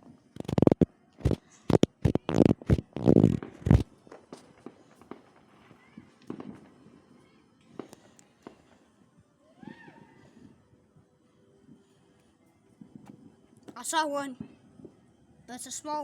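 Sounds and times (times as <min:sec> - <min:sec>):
fireworks bangs and crackles: 0:00.0 - 0:08.8
faint fireworks pops: 0:00.0 - 0:09.0, 0:12.7 - 0:15.1.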